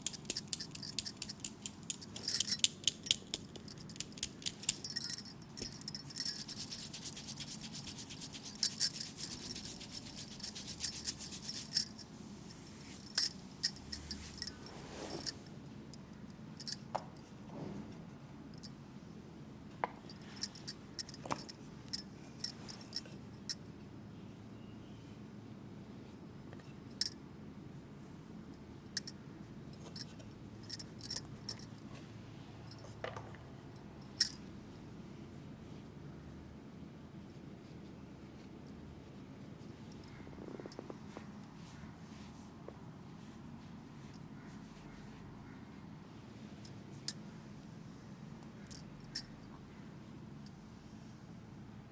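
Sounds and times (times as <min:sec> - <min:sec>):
hands rubbing skin: 0:00.0 - 0:12.0
wet clicks and slaps of massage: 0:01.2 - 0:04.8.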